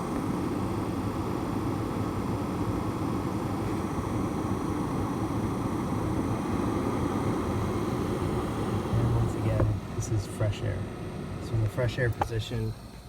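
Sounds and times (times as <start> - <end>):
blower fan rushing air: 0.0 - 13.0.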